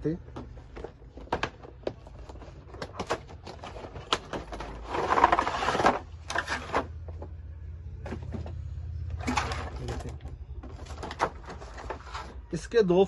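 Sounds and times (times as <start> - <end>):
packaging clicks and knocks: 0.2 - 6.8.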